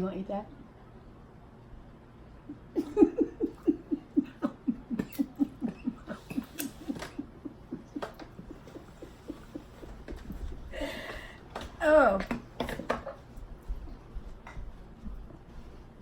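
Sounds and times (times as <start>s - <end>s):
person laughing: 2.5s - 11.1s.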